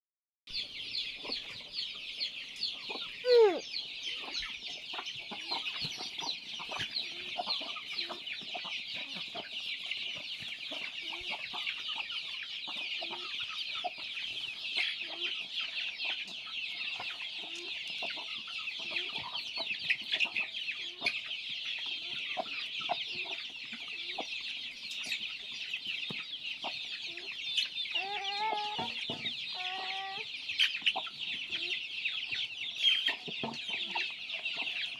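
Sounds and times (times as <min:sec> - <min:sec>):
chickens clucking: 0:00.5 - 0:34.9
high-pitched peeping chorus: 0:00.5 - 0:34.9
loud chicken call: 0:03.2 - 0:03.7.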